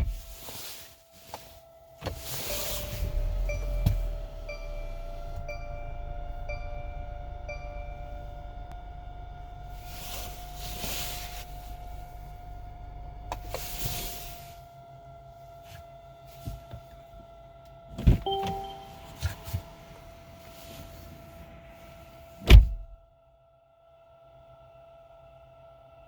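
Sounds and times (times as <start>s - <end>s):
fan-like whining whine: 0.0s - 26.0s
two-note beep: 2.5s - 8.7s, 18.2s - 19.6s
loud thump: 22.5s - 22.9s.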